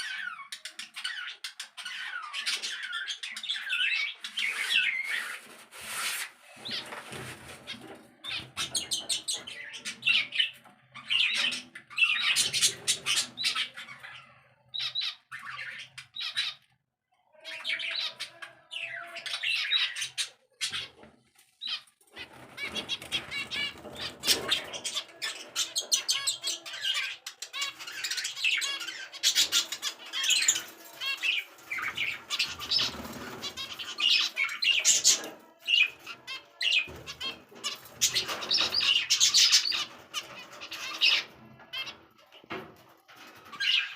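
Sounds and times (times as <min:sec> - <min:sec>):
caged birds chirping and squawking: 0:00.0 - 0:43.9.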